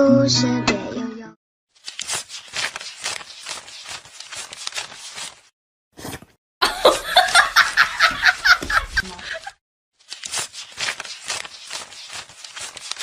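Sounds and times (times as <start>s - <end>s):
person laughing: 6.6s - 9.6s.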